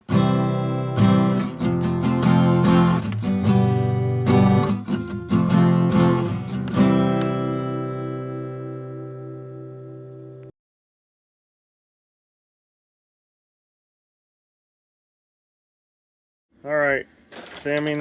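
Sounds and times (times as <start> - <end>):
acoustic guitar strumming chords: 0.1 - 10.3.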